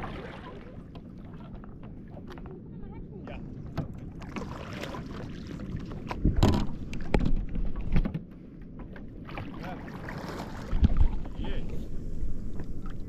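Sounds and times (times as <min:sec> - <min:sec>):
water sloshing against hull: 0:00.0 - 0:13.0
hollow knocks on boat: 0:06.1 - 0:09.0.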